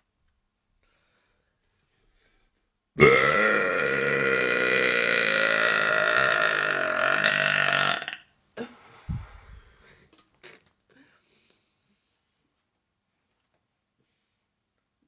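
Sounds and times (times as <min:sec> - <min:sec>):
woman belching loudly: 0:03.0 - 0:08.2.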